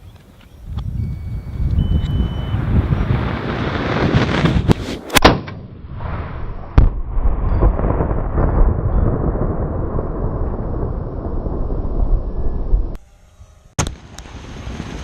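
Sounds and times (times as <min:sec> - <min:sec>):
rumbling wind-like noise: 0:00.0 - 0:13.0
rifle shot: 0:05.1 - 0:07.3.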